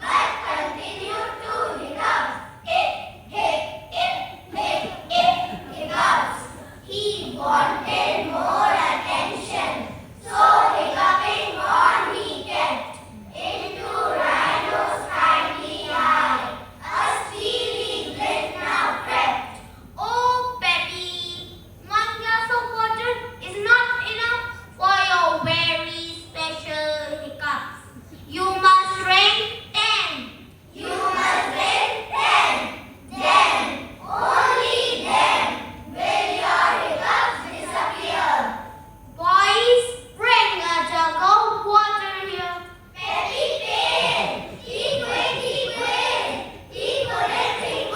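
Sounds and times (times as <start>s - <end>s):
children reciting verse in unison: 0.0s - 20.6s, 30.1s - 47.9s.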